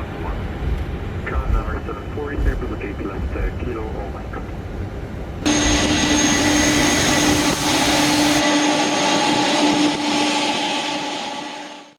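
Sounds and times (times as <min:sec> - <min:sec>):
deep engine rumble: 0:00.0 - 0:08.4
jet engines whining: 0:05.4 - 0:11.9.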